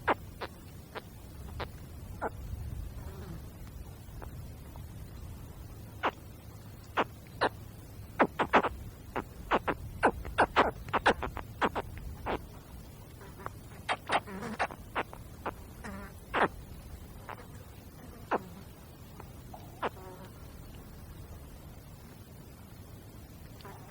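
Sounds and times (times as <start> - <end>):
steady low rumble: 0.0 - 23.9
caiman chirping: 8.2 - 12.5, 13.2 - 16.6.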